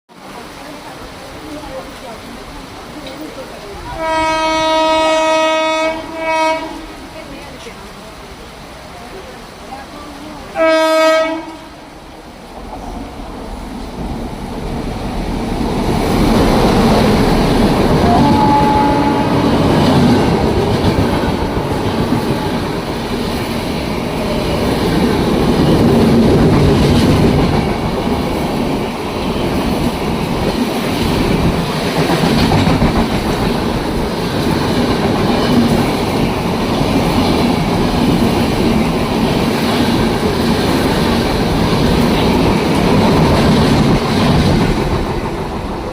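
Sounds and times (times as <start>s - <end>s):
train passing at speed: 0.1s - 45.9s
wheels clacking over rail joints: 14.0s - 45.9s.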